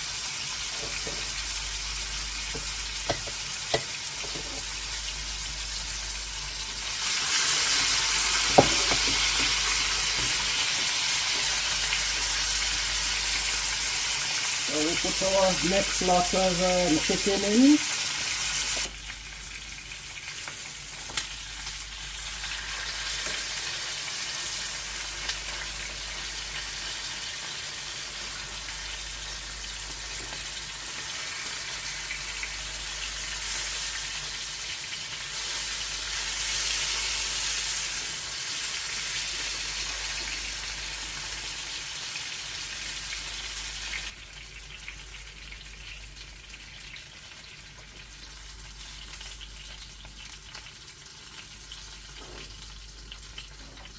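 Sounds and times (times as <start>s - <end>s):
chicken sizzling in hot oil: 0.0s - 53.9s.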